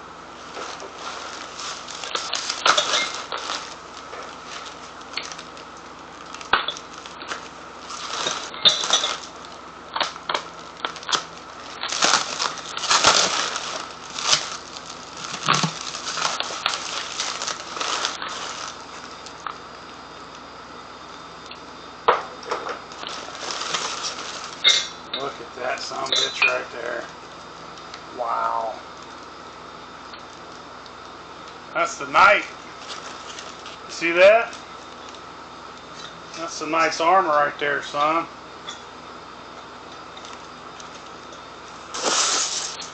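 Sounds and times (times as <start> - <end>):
packing material rustling: 0.4 - 19.5, 22.9 - 24.9, 32.7 - 33.9, 41.8 - 42.9.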